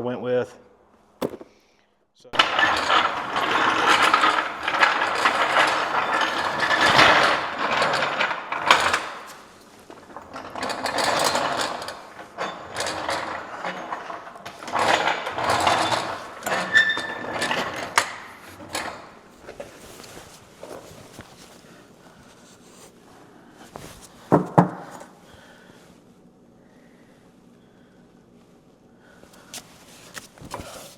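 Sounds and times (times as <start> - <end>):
hand tools clicking and rattling: 2.4 - 21.4.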